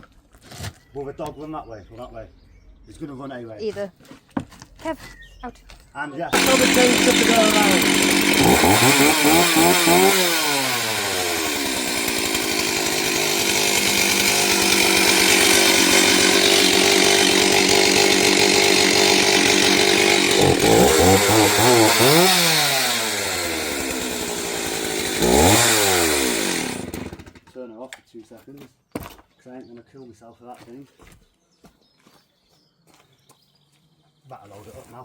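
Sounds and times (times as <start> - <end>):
chainsaw engine revving: 6.3 - 27.5.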